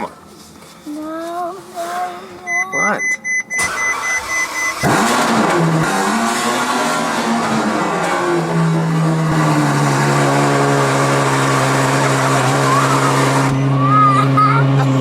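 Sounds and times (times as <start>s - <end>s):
car engine fast idle: 3.6s - 7.6s.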